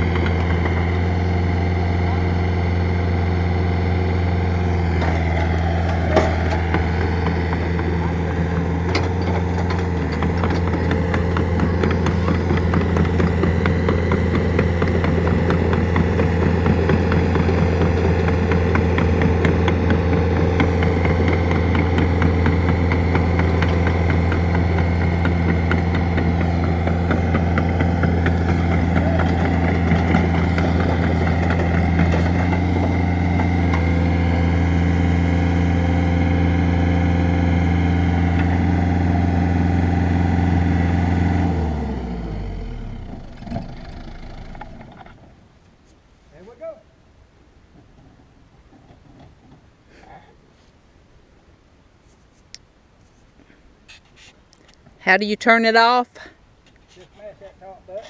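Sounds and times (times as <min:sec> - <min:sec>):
excavator diesel engine running: 0:00.0 - 0:45.3.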